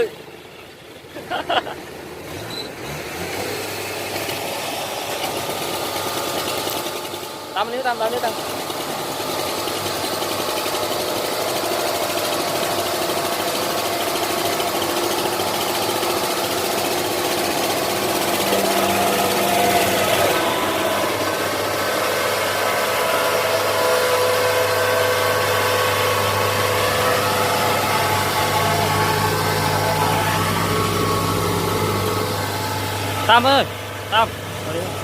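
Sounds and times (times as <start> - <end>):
diesel engine running: 0.0 - 35.0.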